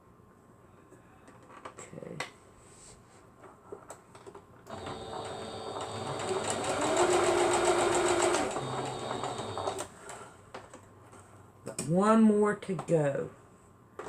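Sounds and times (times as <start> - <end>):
sewing machine stitching: 4.7 - 9.9.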